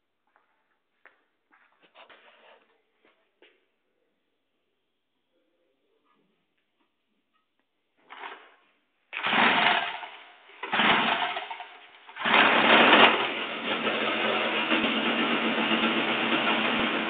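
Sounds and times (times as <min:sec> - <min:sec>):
chainsaw engine starting: 0:08.0 - 0:17.0.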